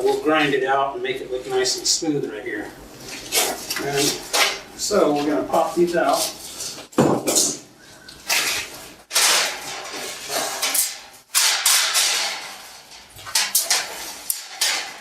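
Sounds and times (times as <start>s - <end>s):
metal knocks and scrapes: 8.3s - 15.0s.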